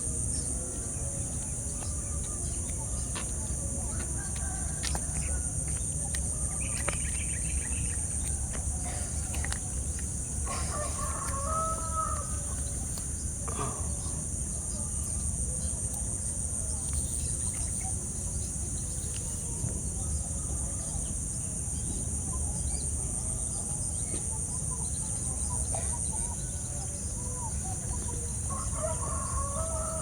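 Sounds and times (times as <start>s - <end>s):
rooster crowing: 10.5s - 12.6s, 28.5s - 30.0s.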